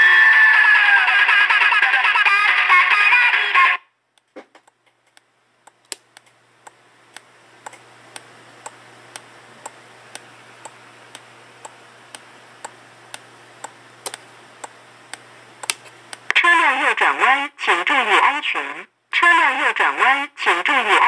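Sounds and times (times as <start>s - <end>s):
steady low hum: 4.0s - 18.1s
irregular clicks: 4.6s - 16.3s.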